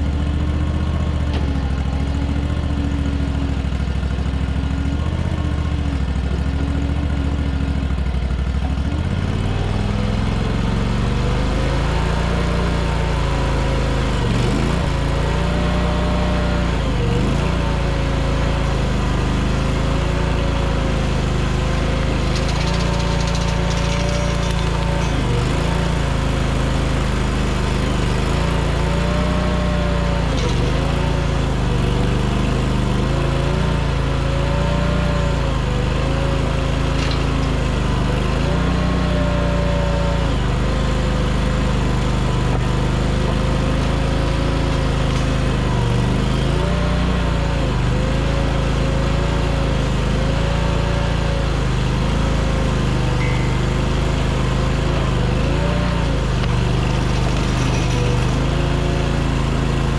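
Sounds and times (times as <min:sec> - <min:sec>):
skid steer engine running hard: 0:00.0 - 0:59.9.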